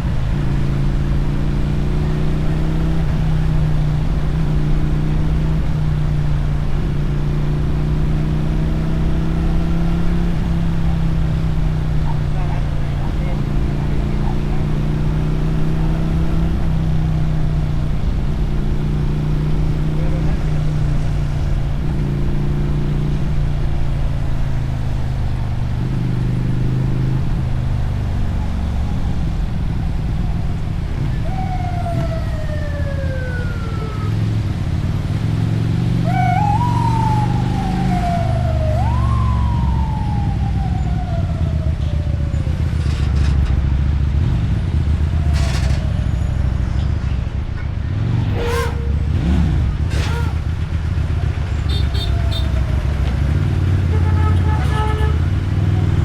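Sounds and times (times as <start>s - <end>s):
motorcycle engine revving: 0.0s - 56.0s
siren wailing: 27.8s - 34.6s, 35.9s - 42.6s, 51.7s - 53.3s.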